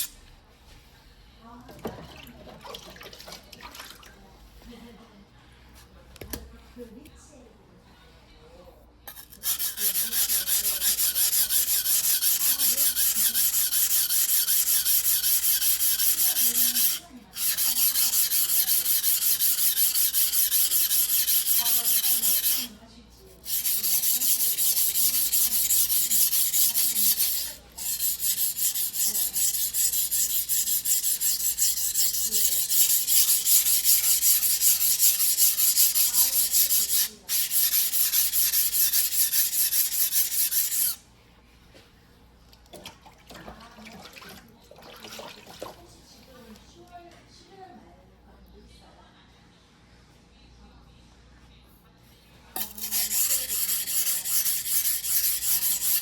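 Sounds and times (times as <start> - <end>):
knife scraping on whetstone: 9.1 - 22.8, 23.4 - 41.0, 52.6 - 56.0.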